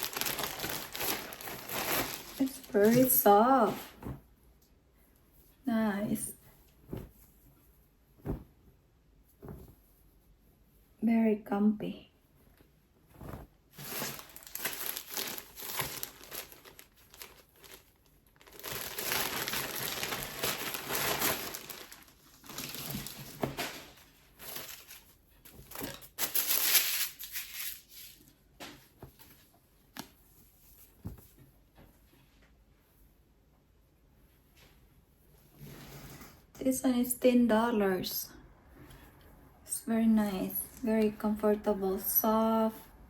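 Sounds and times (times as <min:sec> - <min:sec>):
plastic packaging crinkling: 0:00.0 - 0:03.3, 0:13.8 - 0:28.1.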